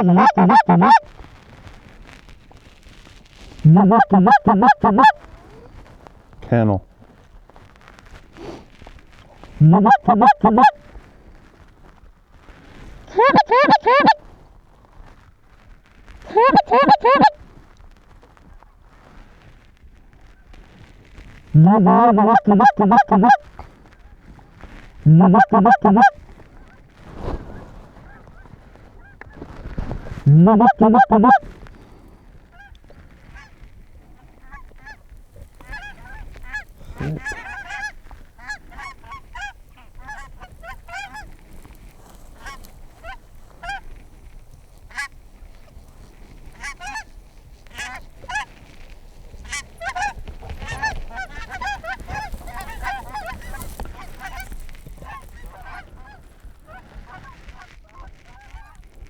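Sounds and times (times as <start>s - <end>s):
geese honking: 0.0s - 1.1s, 3.6s - 5.7s, 9.4s - 10.8s, 13.1s - 14.2s, 16.3s - 17.4s, 21.6s - 23.5s, 25.0s - 26.2s, 30.3s - 31.5s, 34.1s - 44.0s, 46.2s - 57.7s
goose call blown loudly: 0.0s - 1.1s, 3.6s - 5.7s, 9.5s - 10.8s, 13.1s - 14.2s, 16.3s - 17.4s, 21.6s - 23.4s, 25.1s - 26.2s, 30.3s - 31.5s, 35.6s - 41.2s.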